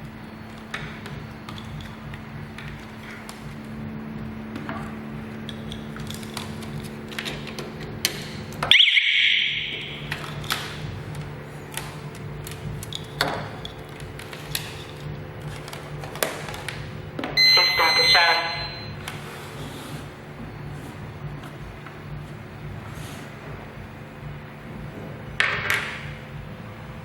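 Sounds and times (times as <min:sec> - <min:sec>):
steady electrical hum: 0:00.0 - 0:27.0
short electronic beep: 0:17.4 - 0:19.0.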